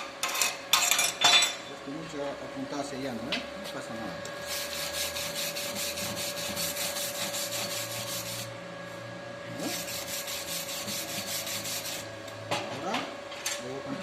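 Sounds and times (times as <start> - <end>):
steady hum: 0.0 - 14.0
wire brush scrubbing metal: 4.5 - 8.5, 9.6 - 12.1.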